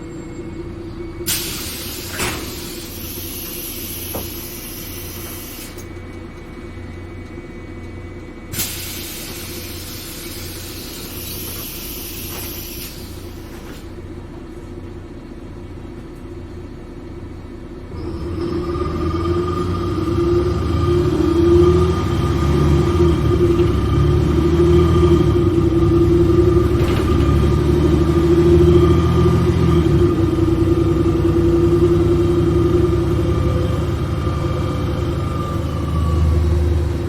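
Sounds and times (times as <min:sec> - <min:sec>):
bus engine rumbling: 0:00.0 - 0:37.0
compressed air hissing: 0:01.3 - 0:05.9, 0:08.5 - 0:13.5.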